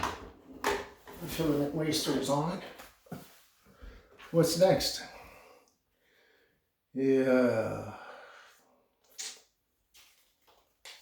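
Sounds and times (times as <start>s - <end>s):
person speaking: 1.1s - 2.8s, 4.3s - 5.2s
man saying yeah: 7.0s - 8.0s.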